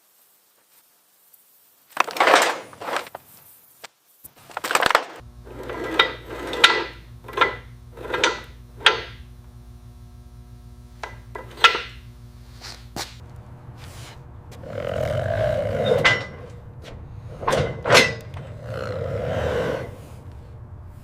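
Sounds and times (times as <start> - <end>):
low hum: 5.2 - 21.0.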